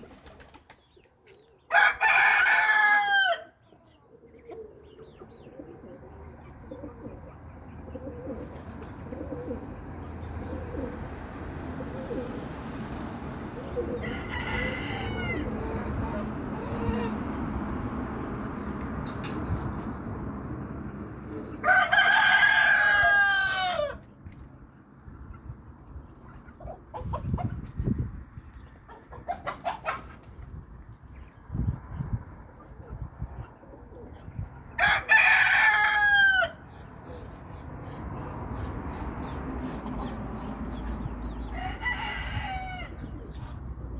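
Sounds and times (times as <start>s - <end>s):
rooster crowing: 1.7s - 3.5s, 14.0s - 15.6s, 21.6s - 24.0s, 34.8s - 36.6s, 41.5s - 43.0s.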